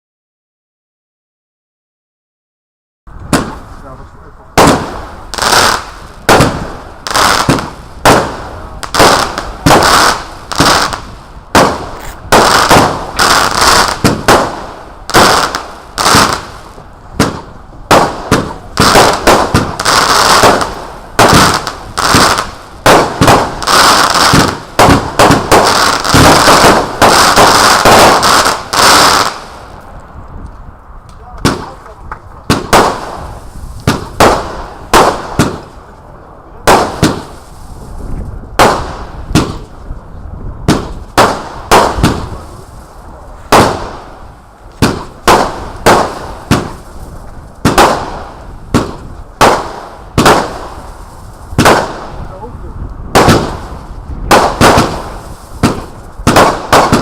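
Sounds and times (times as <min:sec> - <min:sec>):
firework shots banging: 0:03.2 - 0:03.9, 0:04.5 - 0:29.8, 0:31.1 - 0:35.8, 0:36.6 - 0:37.5, 0:38.6 - 0:39.8, 0:40.6 - 0:42.7, 0:43.4 - 0:52.3, 0:53.1 - 0:57.0.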